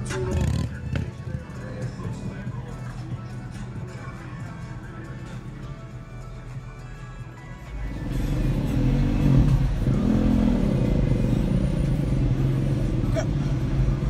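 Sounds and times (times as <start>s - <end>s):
car engine revving: 0.0s - 1.9s, 7.8s - 14.0s.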